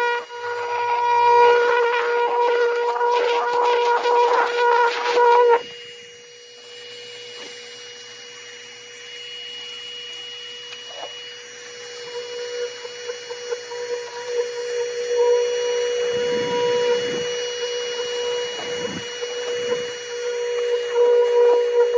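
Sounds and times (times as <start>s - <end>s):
thin high whine: 0.0s - 21.9s
carpet cleaner motor humming: 10.6s - 21.1s.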